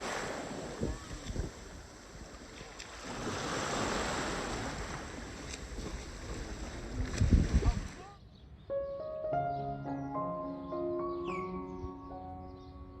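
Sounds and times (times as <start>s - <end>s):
sea waves washing onto beach: 0.0s - 8.0s
wind buffeting microphone: 0.0s - 8.6s.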